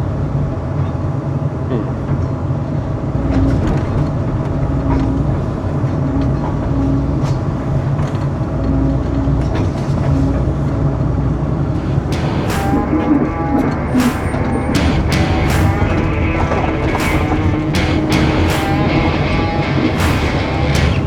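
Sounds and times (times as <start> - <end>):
heavy machinery engine running: 11.8 - 21.0.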